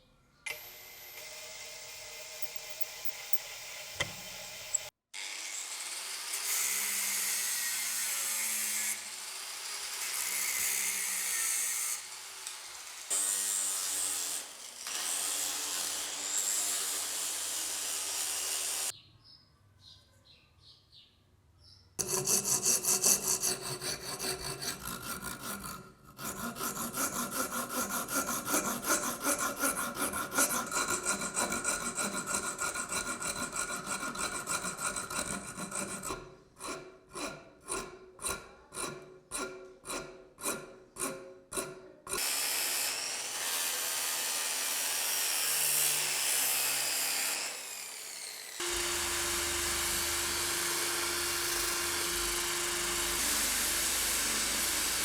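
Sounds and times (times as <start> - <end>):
small power tool humming: 0.5 - 18.9, 42.2 - 55.0
sharpening stone on cleaver blade: 22.0 - 41.7.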